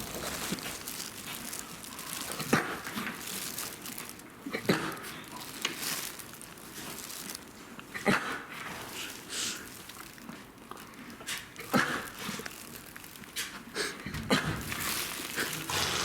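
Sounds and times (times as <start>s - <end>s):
rustling: 0.0s - 4.3s, 4.9s - 7.6s
horse snorting bursts: 15.7s - 16.0s.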